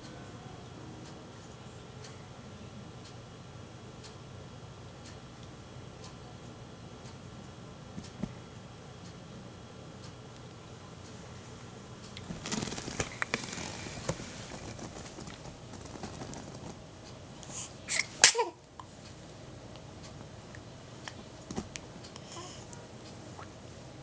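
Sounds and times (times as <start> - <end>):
small clicks: 12.0 - 17.2
faint breathing: 17.4 - 18.2, 22.0 - 22.9
person sneezing: 17.9 - 18.6.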